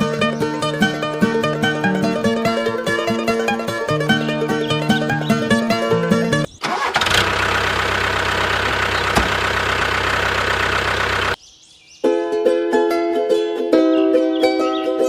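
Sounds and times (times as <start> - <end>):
plucked-string music: 0.0 - 11.4, 12.0 - 15.0
vehicle engine running: 3.6 - 11.4.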